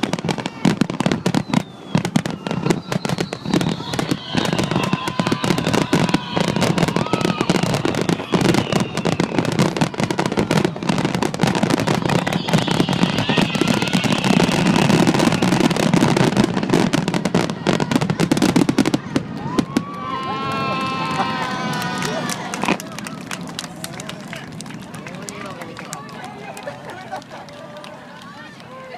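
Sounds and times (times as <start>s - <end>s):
fireworks whistling: 0.0s - 22.8s
fireworks bangs and crackles: 0.0s - 28.9s.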